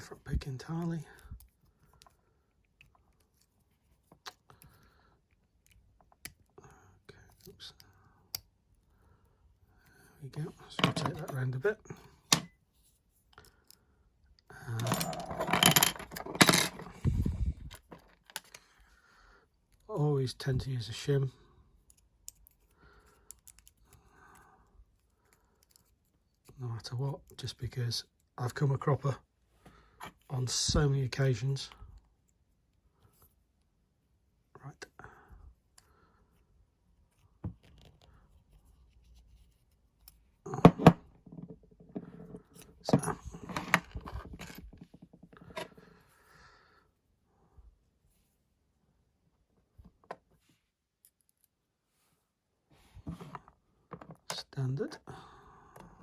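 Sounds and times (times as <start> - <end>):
small metal parts clinking: 14.8 - 17.0.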